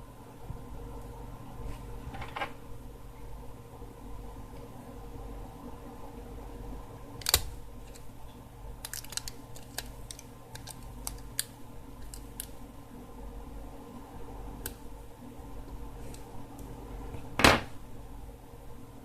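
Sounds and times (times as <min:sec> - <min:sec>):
faint steady hum: 0:00.0 - 0:19.0
smartphone parts clicking: 0:08.8 - 0:12.6.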